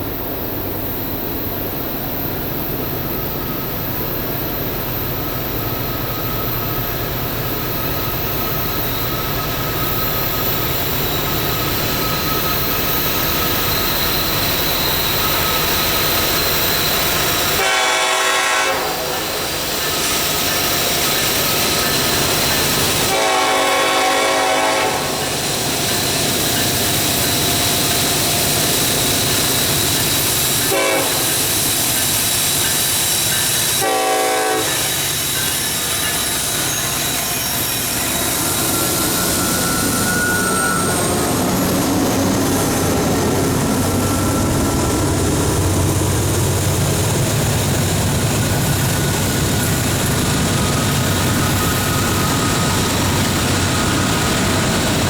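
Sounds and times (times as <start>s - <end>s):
diesel locomotives passing rumble: 0.0s - 55.0s
locomotive air horn blasts: 17.5s - 19.4s, 23.1s - 25.2s, 30.7s - 31.4s, 33.8s - 34.9s.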